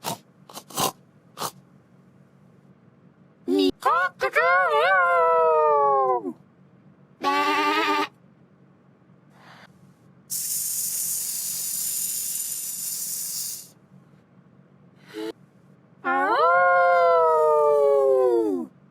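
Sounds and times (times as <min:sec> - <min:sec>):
long hiss: 0:10.3 - 0:13.8
howl-like animal call: 0:16.0 - 0:18.7.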